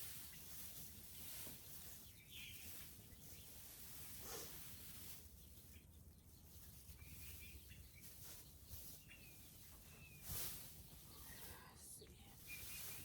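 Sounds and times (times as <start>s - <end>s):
faint bird chirps: 0.0s - 13.0s
brief rustle: 10.2s - 10.8s.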